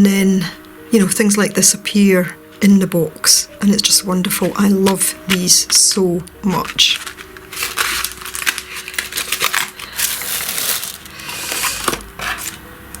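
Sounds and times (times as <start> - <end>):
packaging crinkling and rustling: 3.8 - 12.6.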